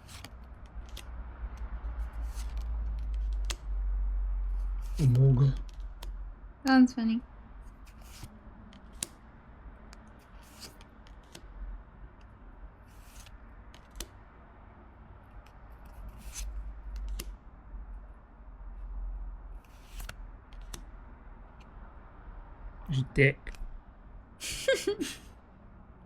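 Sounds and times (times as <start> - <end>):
trading cards clicking and rustling: 0.0 - 3.7, 4.8 - 6.1, 7.8 - 9.2, 9.8 - 11.5, 12.9 - 14.2, 15.4 - 17.4, 19.6 - 20.9.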